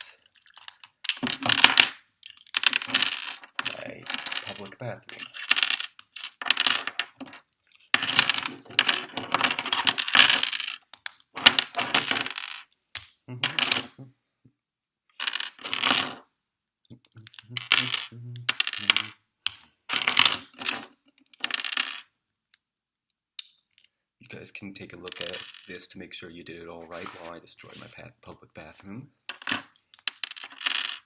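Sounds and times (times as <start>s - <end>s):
plastic toy bricks clattering: 0.0s - 13.9s, 25.1s - 25.8s, 29.3s - 31.0s.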